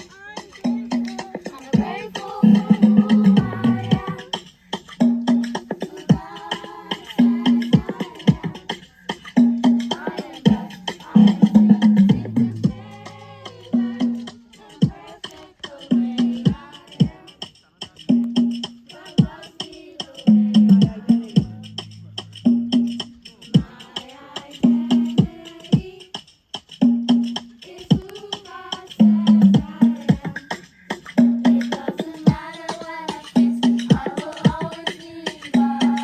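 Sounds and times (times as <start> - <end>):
music with punchy beat: 0.1 - 13.2, 24.5 - 36.0.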